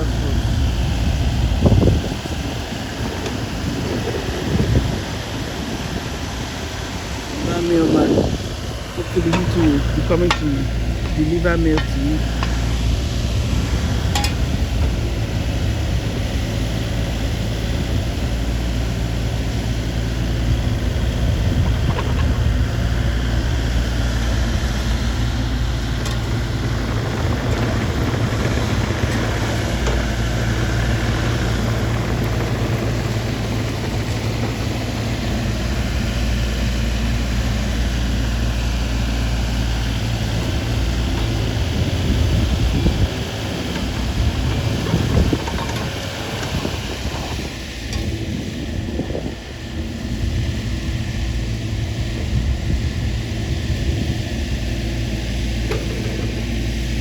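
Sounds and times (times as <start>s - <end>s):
engine running steadily: 0.0s - 57.0s.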